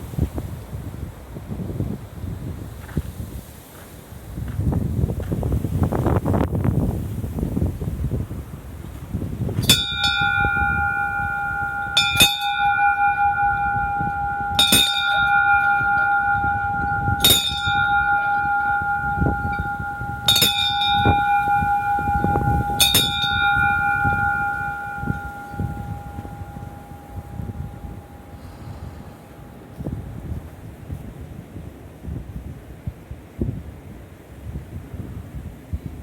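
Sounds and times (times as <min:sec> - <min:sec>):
bell ringing: 0:09.6 - 0:30.1.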